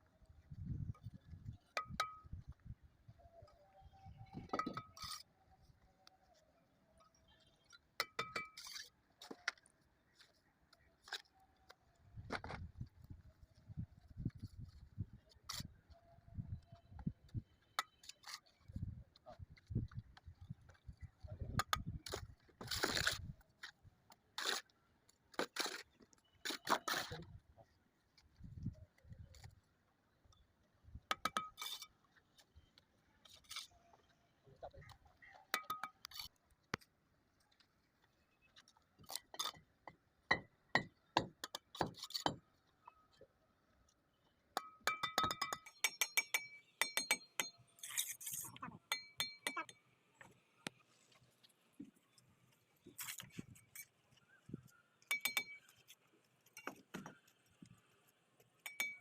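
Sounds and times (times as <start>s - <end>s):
trowel clinking against bricks: 8.0s - 8.9s, 35.6s - 36.3s, 44.6s - 49.8s, 55.0s - 57.3s, 58.6s - 59.0s.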